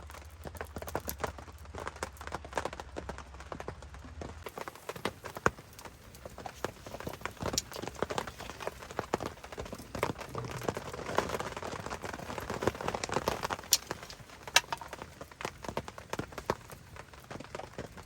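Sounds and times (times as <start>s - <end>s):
rain drops tapping on tent: 0.0s - 18.0s
soft steady rain patter: 0.0s - 18.0s.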